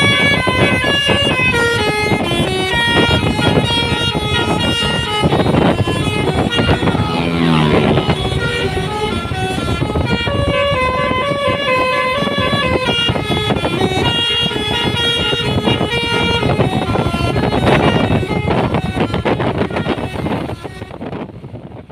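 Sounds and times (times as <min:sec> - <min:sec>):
multi-tone bus horn tune: 0:00.0 - 0:21.6
steady rumble: 0:00.0 - 0:21.7.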